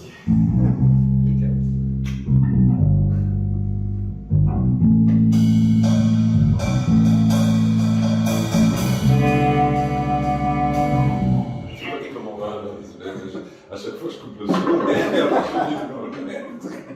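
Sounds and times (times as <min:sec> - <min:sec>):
electric bass long notes: 0:00.1 - 0:12.1
guitar long held notes: 0:02.5 - 0:12.2
drum kit hits: 0:05.0 - 0:11.8.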